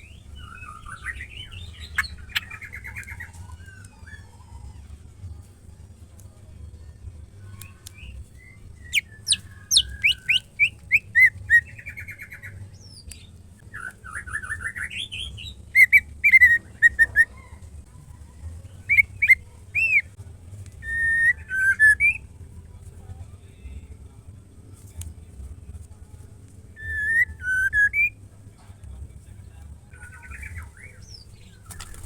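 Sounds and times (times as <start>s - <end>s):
bird singing whistles and trills: 0.0s - 4.6s, 7.6s - 17.6s, 18.8s - 20.1s, 20.8s - 22.3s, 26.8s - 28.2s
faint low hum: 0.0s - 32.0s.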